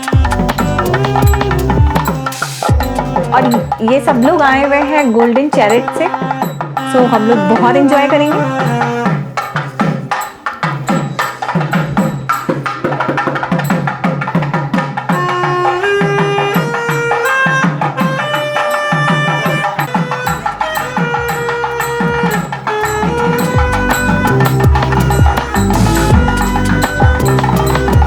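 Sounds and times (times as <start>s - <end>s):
hand drum beat: 0.0s - 28.0s
melody of held notes: 0.0s - 28.0s
deep bass: 0.2s - 3.4s, 23.6s - 28.0s.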